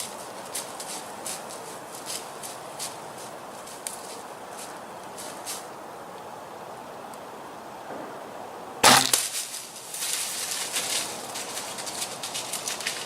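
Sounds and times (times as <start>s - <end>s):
bow shot crack: 7.9s - 9.5s
deer crashing through brush: 8.8s - 13.0s.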